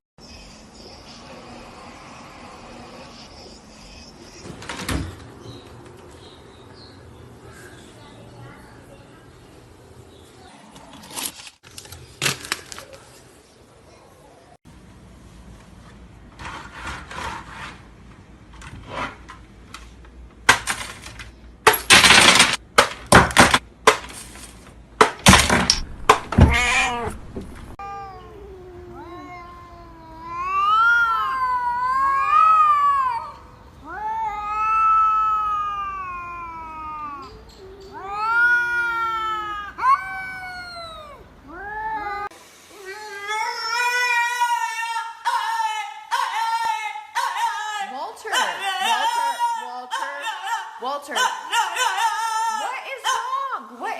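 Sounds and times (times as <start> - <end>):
cat yowling: 26.4 - 27.2, 27.8 - 47.8.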